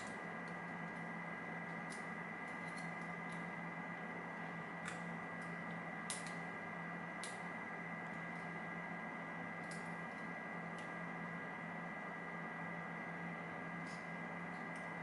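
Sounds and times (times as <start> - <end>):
electrical hum: 0.0 - 15.0.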